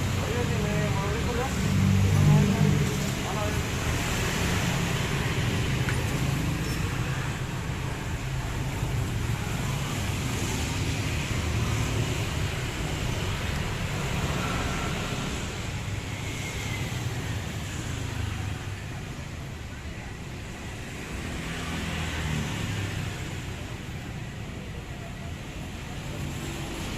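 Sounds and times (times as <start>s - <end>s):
road noise: 0.0s - 26.9s.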